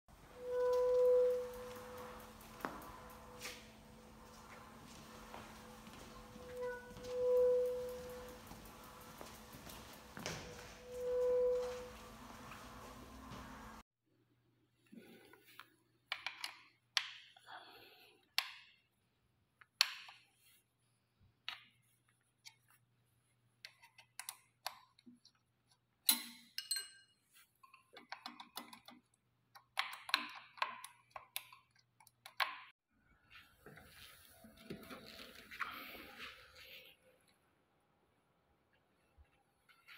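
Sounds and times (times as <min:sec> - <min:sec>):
tools clicking and knocking: 0:23.7 - 0:32.7.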